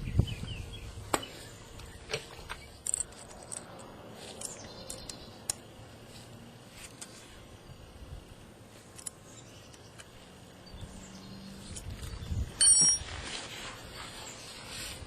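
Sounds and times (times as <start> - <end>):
metal parts clicking: 2.4 - 5.6, 12.6 - 13.1
ringing metallic clink: 12.6 - 13.1.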